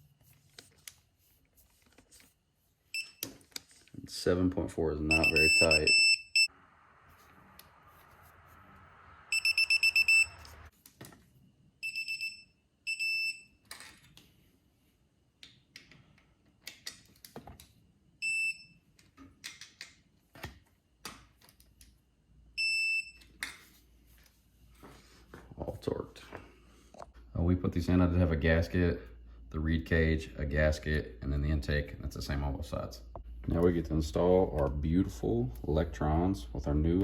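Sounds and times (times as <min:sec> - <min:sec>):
high-pitched electronic beeps: 0:05.1 - 0:10.7.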